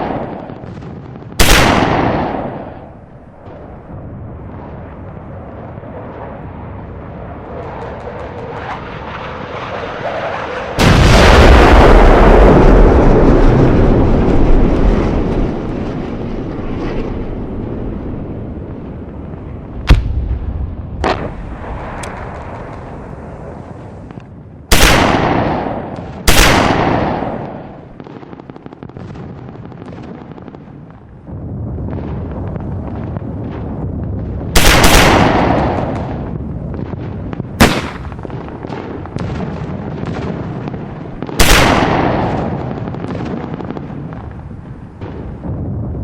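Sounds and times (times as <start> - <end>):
sharp cracks: 0.0 - 3.6, 19.8 - 29.0, 34.6 - 36.5, 37.2 - 45.4
loud blasts: 0.0 - 46.0.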